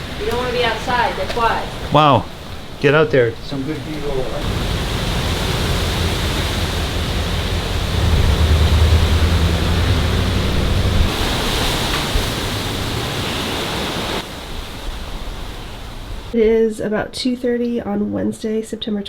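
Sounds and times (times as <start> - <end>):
wind buffeting microphone: 0.0 - 17.1
wind rushing: 4.4 - 16.4.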